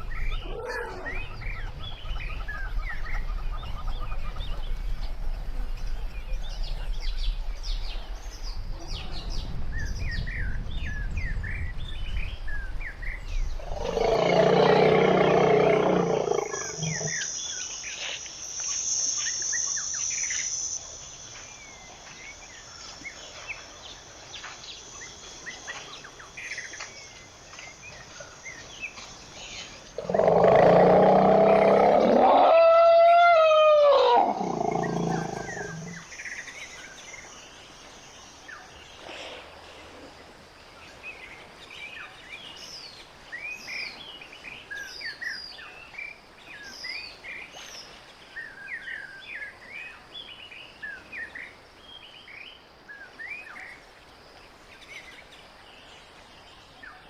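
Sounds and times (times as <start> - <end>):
birds chirping: 0.0 - 45.7
elephant trumpeting: 13.7 - 17.2, 30.0 - 36.0.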